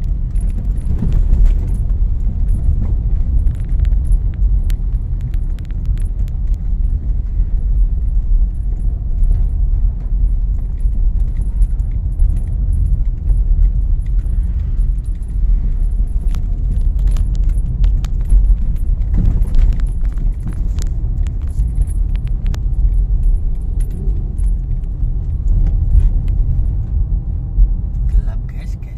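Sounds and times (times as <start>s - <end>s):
road and engine rumble: 0.0s - 28.9s.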